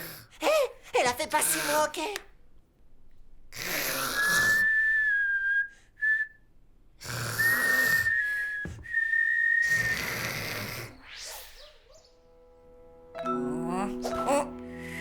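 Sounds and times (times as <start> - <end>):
cartoon snoring with whistle: 3.6 - 5.6, 7.0 - 12.1.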